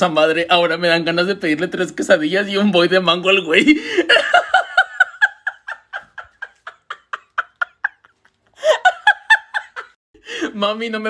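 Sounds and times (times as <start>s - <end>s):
person laughing: 3.6s - 10.0s.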